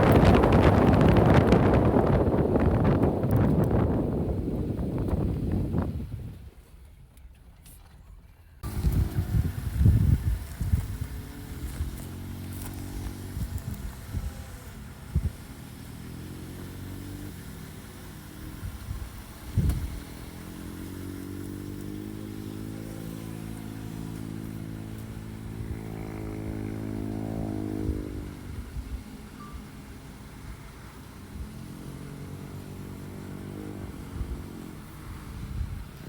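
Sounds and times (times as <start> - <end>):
wind buffeting microphone: 0.0 - 6.6, 8.6 - 17.1, 18.4 - 22.3, 31.3 - 36.0
vehicle engine running: 0.0 - 36.0.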